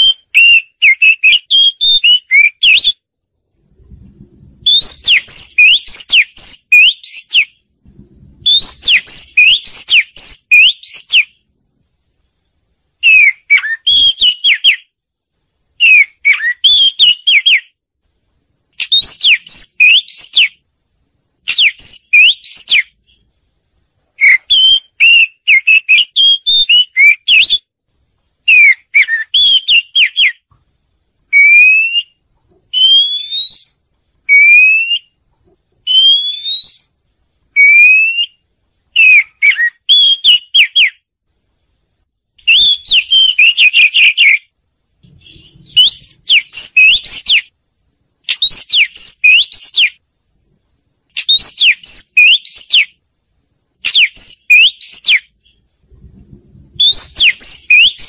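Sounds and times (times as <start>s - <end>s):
bird singing whistled notes: 0.0s - 3.1s, 4.6s - 7.7s, 8.3s - 11.5s, 13.0s - 15.0s, 15.8s - 17.8s, 18.8s - 20.6s, 21.4s - 23.3s, 24.2s - 27.7s, 28.4s - 30.5s, 31.3s - 35.2s, 35.8s - 36.9s, 37.6s - 41.0s, 42.4s - 44.5s, 45.1s - 47.5s, 48.3s - 50.0s, 51.2s - 53.0s, 53.8s - 55.7s, 56.7s - 58.0s.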